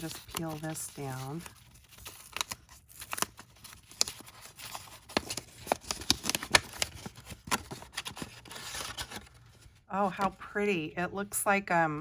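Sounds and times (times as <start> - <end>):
package crinkling and clicking: 1.6 - 9.4.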